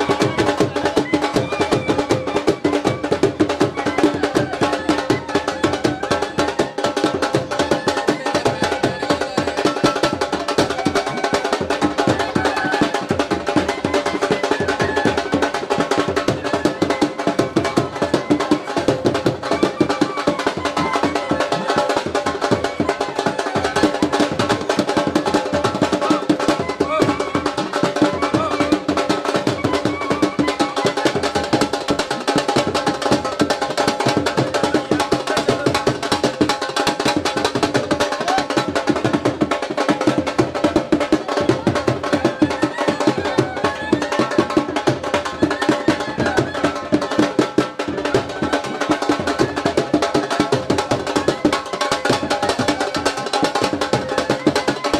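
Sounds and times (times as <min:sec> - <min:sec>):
drums playing fast rhythm: 0:00.0 - 0:54.9.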